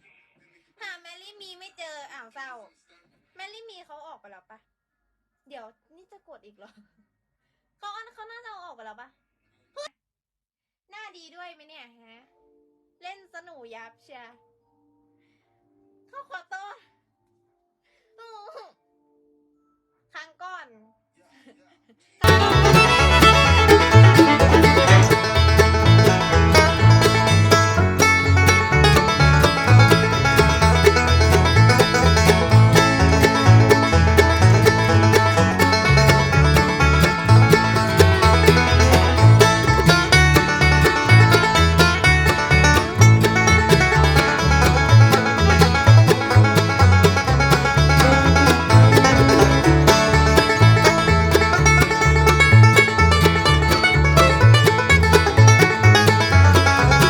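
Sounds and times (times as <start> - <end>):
plucked strings: 22.2 - 57.0.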